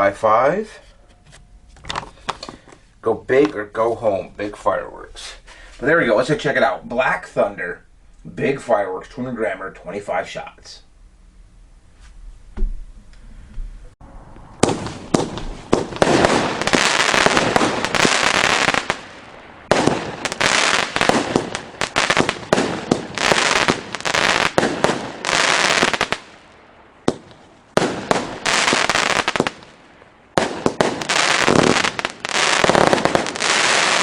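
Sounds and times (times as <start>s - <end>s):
firework hiss and crackle: 14.6s - 34.0s
firework sharp bangs: 14.6s - 34.0s.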